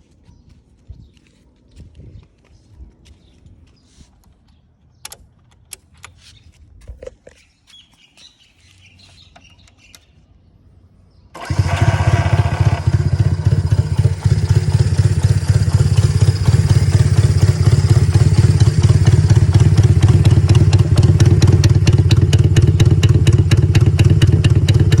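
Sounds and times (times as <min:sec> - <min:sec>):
motorcycle engine idling: 0:11.4 - 0:25.0.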